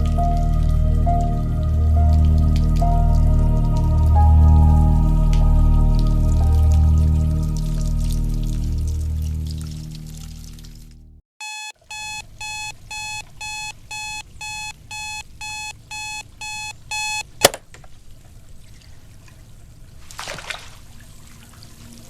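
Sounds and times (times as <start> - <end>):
alarm clock beeping: 11.4 - 17.4.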